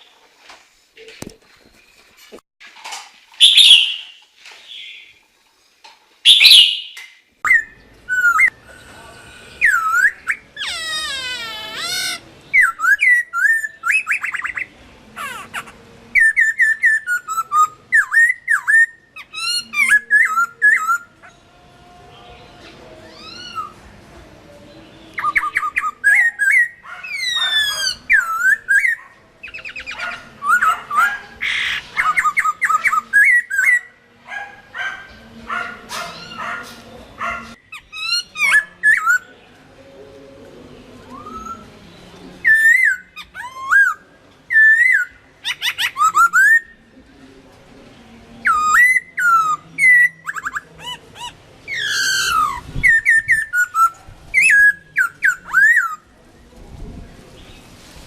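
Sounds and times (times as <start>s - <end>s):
bird singing whistled phrases: 3.4s - 4.2s, 6.3s - 8.6s.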